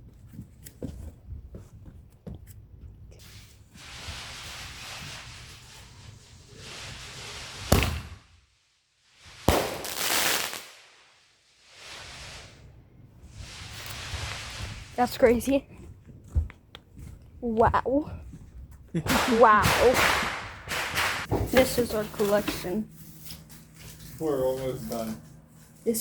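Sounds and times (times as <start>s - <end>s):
fireworks bangs: 3.2s - 8.3s, 9.2s - 11.0s, 11.6s - 15.5s, 19.0s - 22.5s
fireworks hissing: 3.2s - 8.4s, 9.1s - 15.6s, 19.0s - 22.6s.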